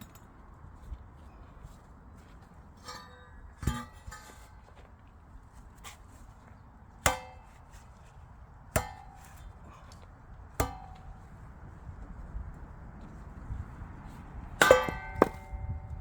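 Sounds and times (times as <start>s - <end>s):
axe chopping firewood: 7.1s - 7.5s, 8.8s - 9.4s, 10.6s - 11.2s, 14.6s - 15.7s.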